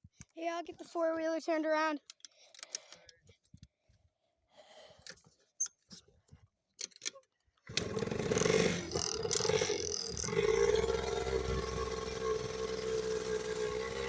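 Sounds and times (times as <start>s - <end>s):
atv engine revving: 7.7s - 14.0s.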